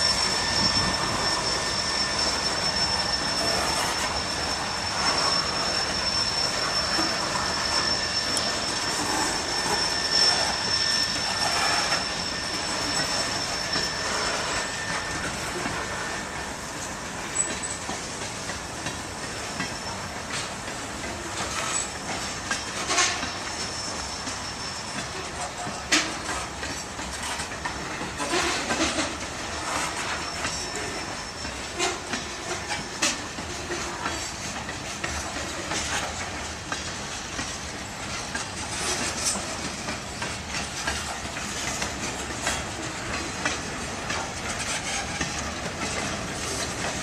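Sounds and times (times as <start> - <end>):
high-pitched wheel squeal: 0.0 - 18.2, 19.3 - 34.5, 38.1 - 47.0
wheels clicking over rail joints: 25.0 - 47.0.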